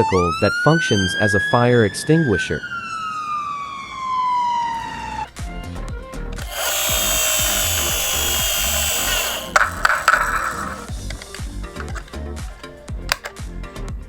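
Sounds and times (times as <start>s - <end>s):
toy siren gliding down: 0.0s - 5.3s, 6.4s - 10.8s
background music: 5.3s - 14.0s
drill-like whirr: 6.4s - 10.9s.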